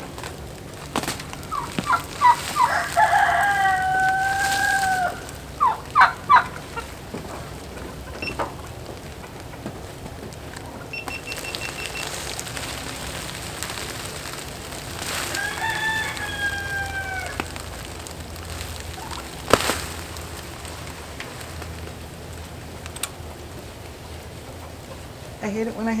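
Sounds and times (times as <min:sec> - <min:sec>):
rooster crowing: 0:01.5 - 0:06.7, 0:15.0 - 0:18.2.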